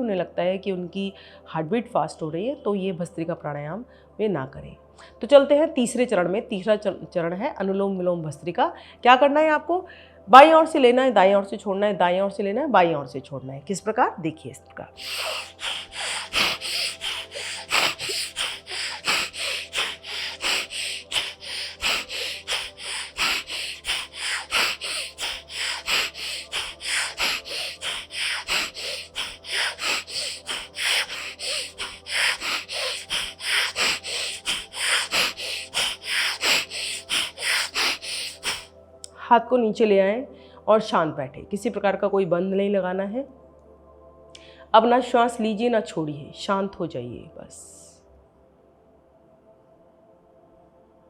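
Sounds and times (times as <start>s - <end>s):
rapid forceful nose breathing: 15.0s - 38.7s.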